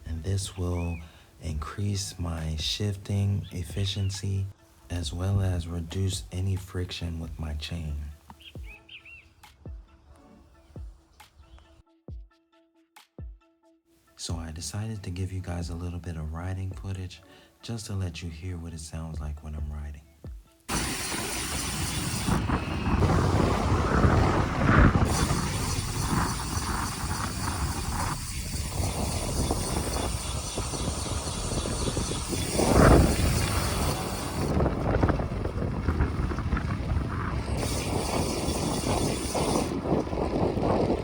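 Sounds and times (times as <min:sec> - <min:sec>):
bike tyre and road noise: 0:20.7 - 0:41.0
wind rushing over microphone: 0:20.7 - 0:41.0.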